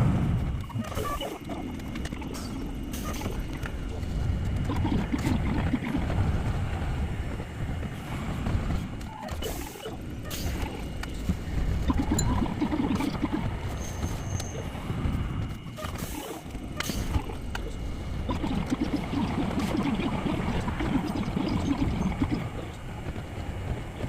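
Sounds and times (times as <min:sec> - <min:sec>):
streetcar rumble: 0:00.0 - 0:12.6, 0:13.2 - 0:21.4, 0:22.0 - 0:24.0.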